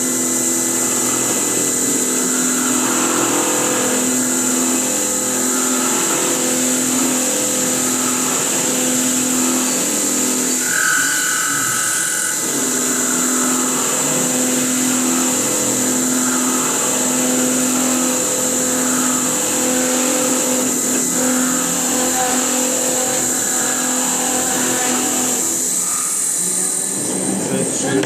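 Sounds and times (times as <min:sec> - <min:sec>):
constant low machine hum: 0:00.0 - 0:28.0
milling machine spindle whine: 0:00.0 - 0:28.0.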